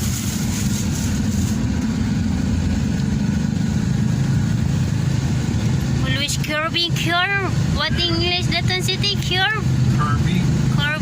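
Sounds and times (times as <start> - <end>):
van engine and road noise: 0.0 - 11.0.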